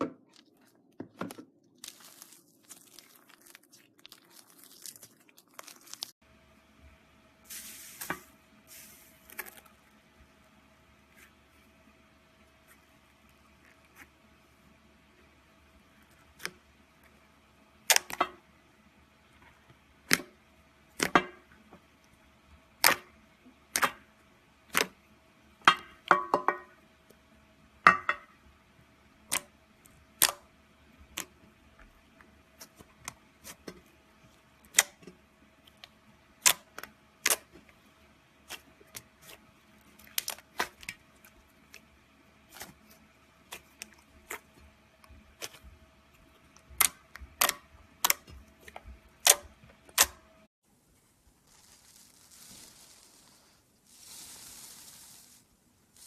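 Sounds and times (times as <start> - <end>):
slime popping and crackling: 1.8 - 6.1.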